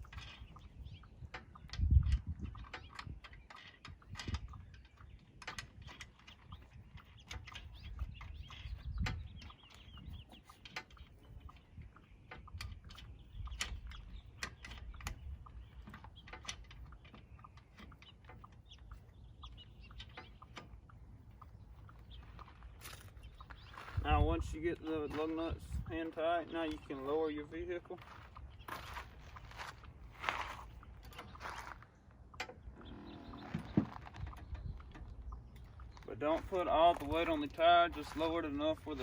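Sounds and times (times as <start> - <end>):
lug nuts clicking on studs: 0.1 - 24.0.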